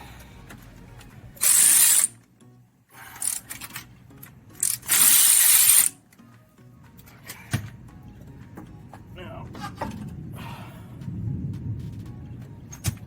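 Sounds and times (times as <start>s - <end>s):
pressurised hissing: 1.4s - 2.1s, 4.6s - 6.0s.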